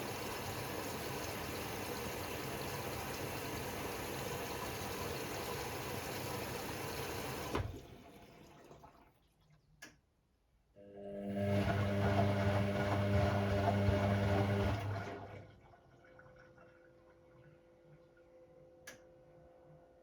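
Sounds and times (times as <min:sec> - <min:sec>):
water rushing into washing machine: 0:00.0 - 0:09.6, 0:11.0 - 0:16.8.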